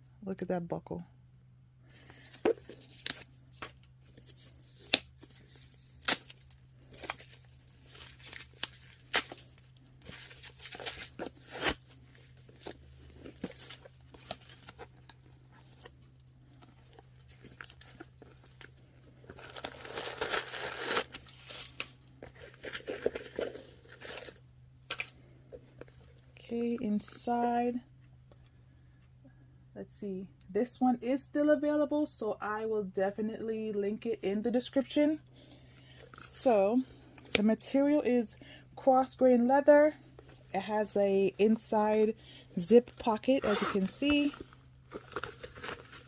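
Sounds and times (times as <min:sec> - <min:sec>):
packaging crinkling and tearing: 0:02.0 - 0:25.2, 0:42.9 - 0:46.0
rustling: 0:43.1 - 0:46.0.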